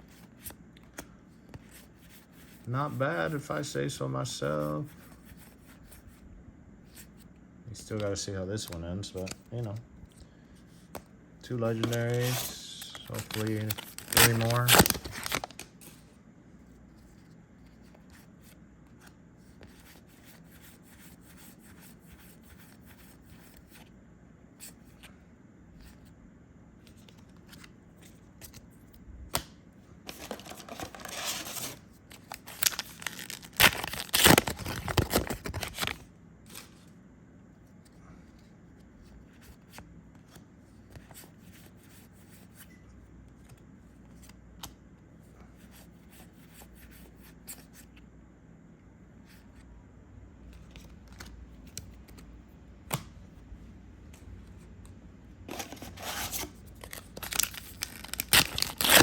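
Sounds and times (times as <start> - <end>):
cards clicking and sliding: 7.9 - 9.8, 10.8 - 16.0
foil wrapper tearing and crinkling: 11.7 - 15.7, 30.1 - 36.6, 56.7 - 59.0.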